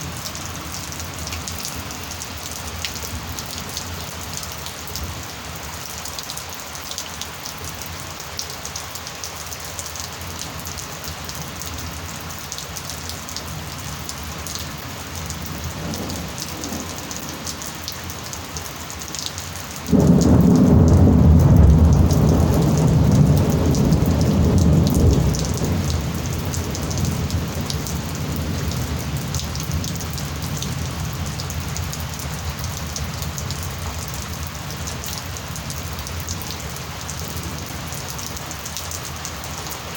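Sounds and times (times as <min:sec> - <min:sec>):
heavy rain: 0:00.0 - 0:39.9
thunder crack and rumble: 0:15.6 - 0:17.7, 0:19.9 - 0:34.4
distant thunder rumble: 0:15.6 - 0:17.9, 0:19.9 - 0:32.4.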